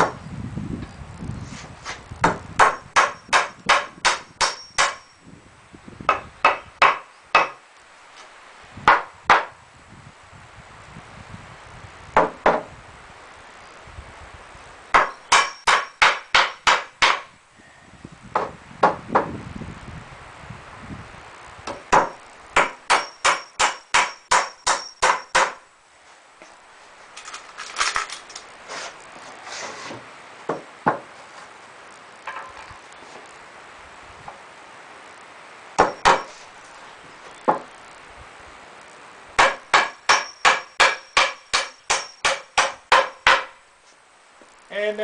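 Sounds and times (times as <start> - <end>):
hammer driving nails into wood: 2.2 - 5.0, 14.9 - 17.3, 21.7 - 25.6, 39.4 - 43.5.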